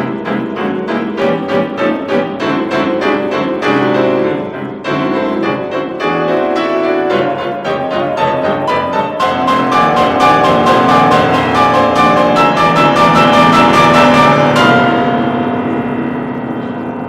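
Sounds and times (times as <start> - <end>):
piano playing: 0.0 - 17.0.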